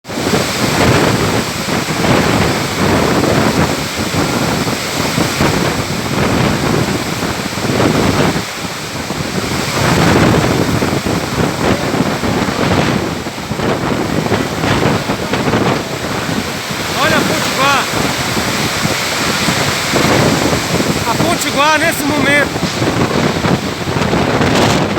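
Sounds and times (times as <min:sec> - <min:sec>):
storm wind buffeting microphone: 0:00.0 - 0:24.9.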